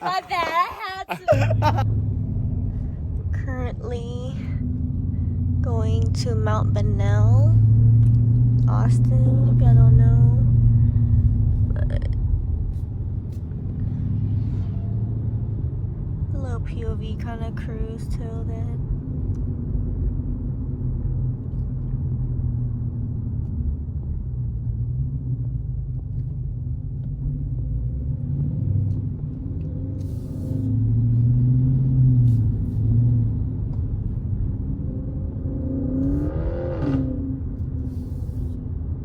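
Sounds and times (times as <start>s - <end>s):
car engine and road noise: 0.0s - 39.0s
engine revving: 1.3s - 12.3s, 27.7s - 38.6s.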